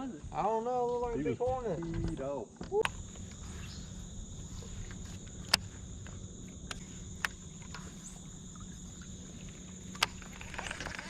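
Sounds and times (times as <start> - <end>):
insects buzzing: 0.0 - 11.0
low steady hum: 2.8 - 11.0
sharp clicks: 4.8 - 7.9.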